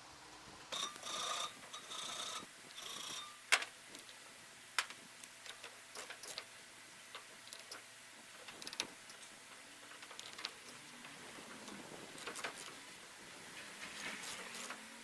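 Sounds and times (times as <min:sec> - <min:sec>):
metal clicks and knocks: 0:08.4 - 0:10.8.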